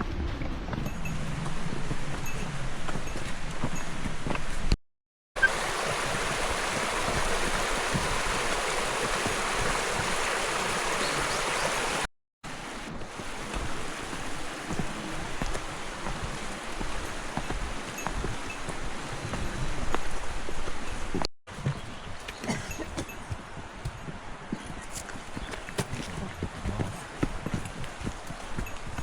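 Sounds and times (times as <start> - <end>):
stream rushing: 5.4 - 21.2
light footsteps: 5.5 - 29.0.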